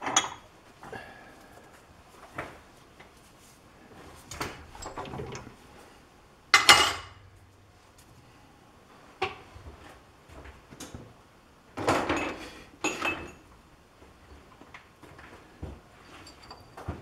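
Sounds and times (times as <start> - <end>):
metal tools clinking and clattering: 4.7 - 5.4, 16.0 - 17.0.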